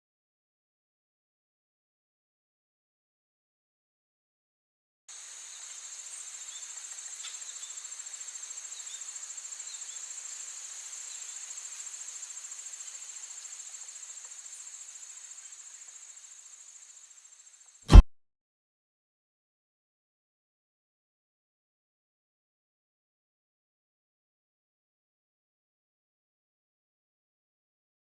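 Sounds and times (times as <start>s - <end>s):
insects trilling: 5.1s - 17.8s.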